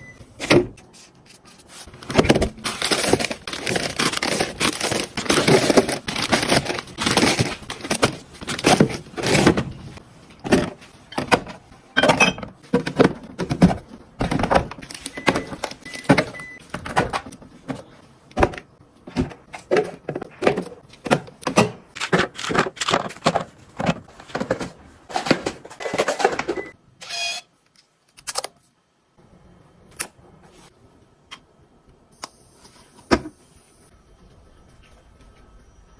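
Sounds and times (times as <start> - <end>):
plastic containers rustling and clattering: 0.3 - 26.8.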